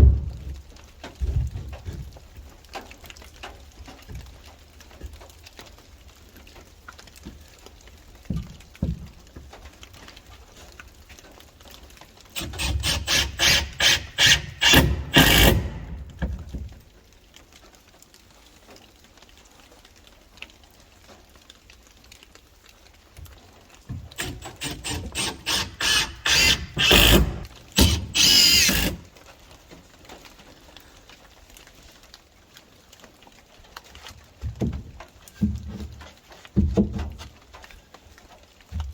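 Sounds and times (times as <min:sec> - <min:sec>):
tool strokes on wood: 0:12.4 - 0:16.1, 0:24.2 - 0:29.0.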